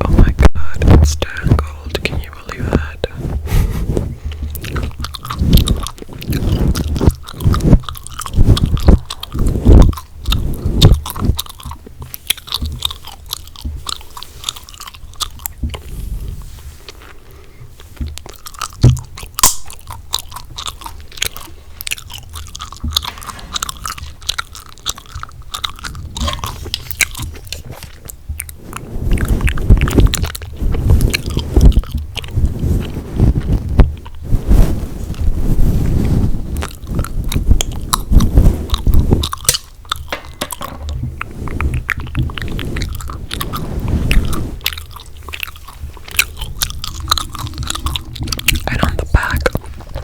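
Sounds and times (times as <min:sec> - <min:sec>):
gum chewing with wet smacks: 0:00.0 - 0:34.2, 0:36.5 - 0:50.0
mouth clicks: 0:41.2 - 0:50.0.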